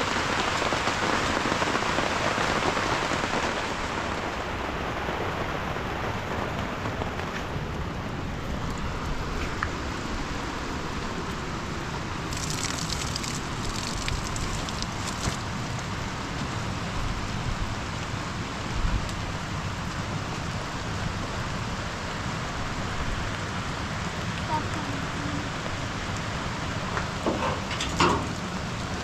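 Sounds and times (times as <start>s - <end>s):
steady rain falling: 0.0s - 29.0s
sharp crackling: 12.3s - 15.9s.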